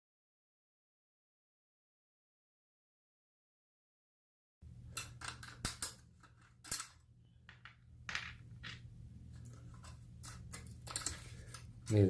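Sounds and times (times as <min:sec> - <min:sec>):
hand tools clicking on bicycle parts: 0:09.7 - 0:12.0.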